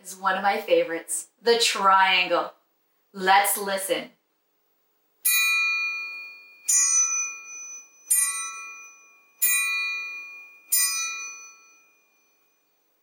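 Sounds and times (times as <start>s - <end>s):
metal triangle ringing: 5.2s - 13.0s.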